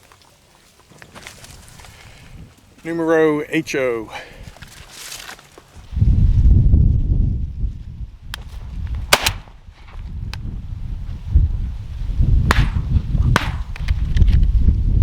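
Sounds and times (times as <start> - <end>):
wind buffeting microphone: 5.8 - 15.0
faint distant gunshot cracks: 9.1 - 9.5, 12.5 - 13.8
shotgun shots: 9.1 - 9.5, 12.5 - 13.8.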